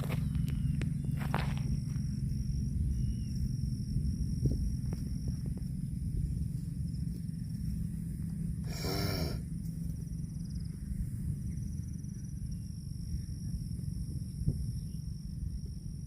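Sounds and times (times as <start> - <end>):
insects buzzing: 0.0 - 16.0
low rumble: 0.0 - 16.0.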